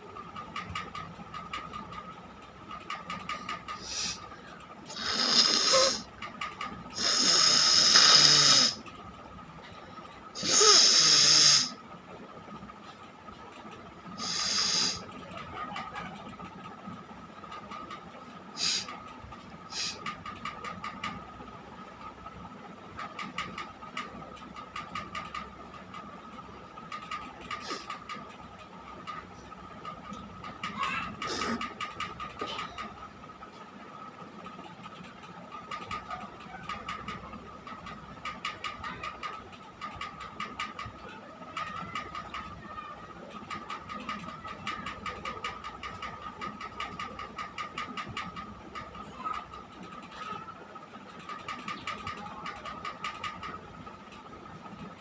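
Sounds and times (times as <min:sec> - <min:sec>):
short irregular clicks: 0:00.0 - 0:55.0
steady high hum: 0:00.0 - 0:55.0
small motor humming with whine: 0:02.9 - 0:21.5.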